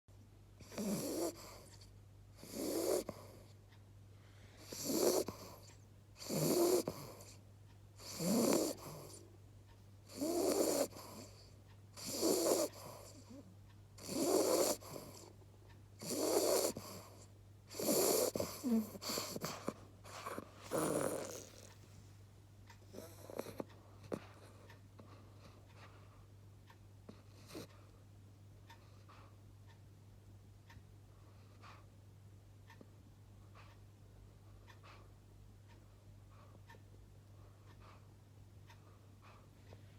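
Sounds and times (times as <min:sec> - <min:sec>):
puppy snoring: 0:00.6 - 0:03.6, 0:04.3 - 0:09.4, 0:10.0 - 0:15.4, 0:16.0 - 0:21.9, 0:22.7 - 0:26.3, 0:27.0 - 0:28.0.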